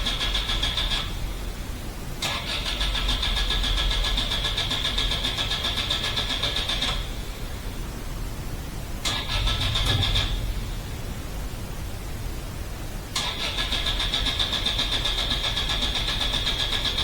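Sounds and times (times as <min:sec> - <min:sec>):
starter motor cranking engine: 0:00.0 - 0:01.2, 0:02.2 - 0:07.6, 0:09.0 - 0:11.2, 0:13.1 - 0:17.0.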